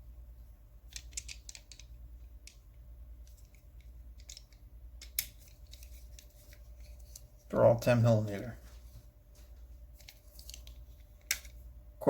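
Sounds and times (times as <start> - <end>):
low steady hum: 0.0 - 12.0
metal sockets clicking and tapping: 3.2 - 6.3.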